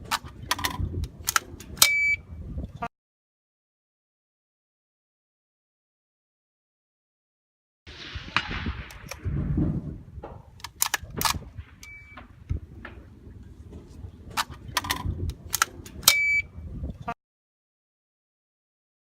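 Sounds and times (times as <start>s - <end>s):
shot timer beeps: 1.8s - 2.2s, 11.8s - 12.2s, 16.1s - 16.5s
rifle shots cracking: 7.9s - 16.2s.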